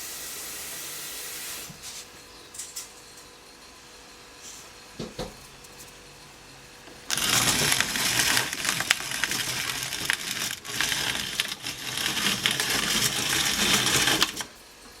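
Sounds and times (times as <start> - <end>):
hand-cranked grain mill grinding: 6.9 - 14.6.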